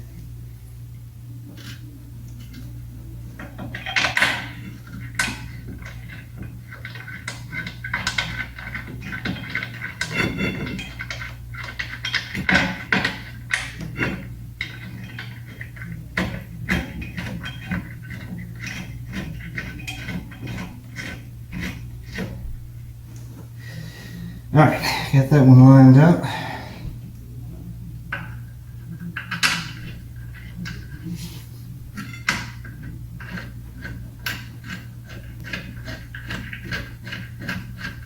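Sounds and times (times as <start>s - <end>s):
steady low hum: 0.0s - 38.0s
metal clinks and knocks: 3.4s - 22.4s, 32.0s - 38.0s.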